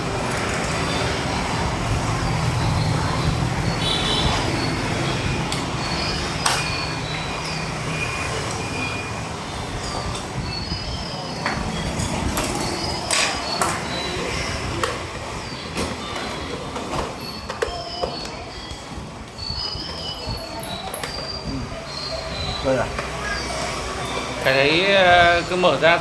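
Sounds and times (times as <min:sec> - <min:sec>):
low background noise: 0:00.0 - 0:26.0
short high squeaks: 0:15.3 - 0:24.6.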